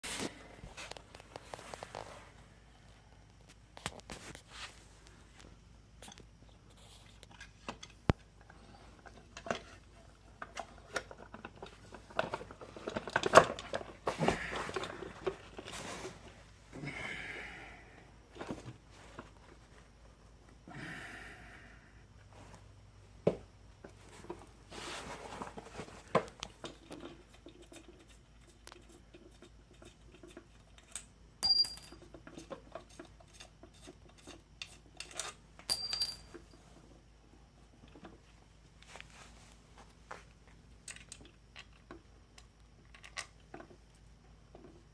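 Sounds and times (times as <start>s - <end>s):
small metal parts clicking: 30.2s - 32.5s
ringing metallic clinks: 31.4s - 32.2s, 35.7s - 36.6s.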